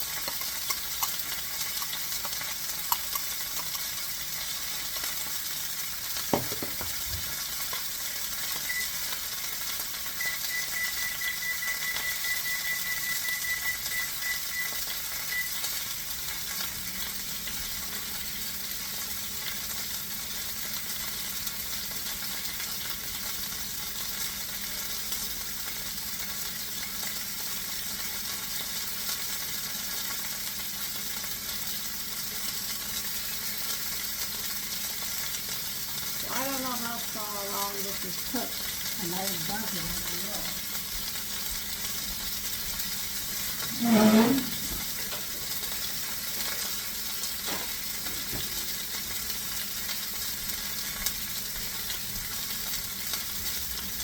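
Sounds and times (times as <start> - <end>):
chicken sizzling in skillet: 0.0 - 54.0
knock: 6.3 - 7.0.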